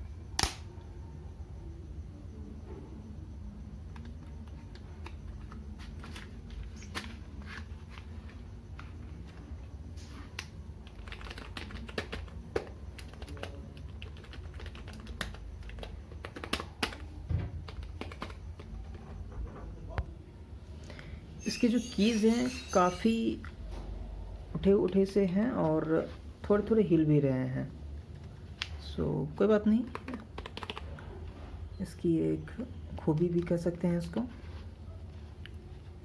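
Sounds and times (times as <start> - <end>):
keyboard keys clicking: 10.8 - 19.0, 29.8 - 31.0.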